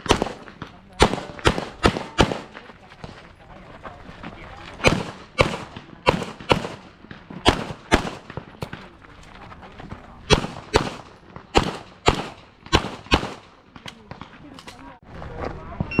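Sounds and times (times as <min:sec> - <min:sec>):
handgun shots: 0:00.0 - 0:02.6, 0:04.8 - 0:08.8, 0:10.3 - 0:14.3.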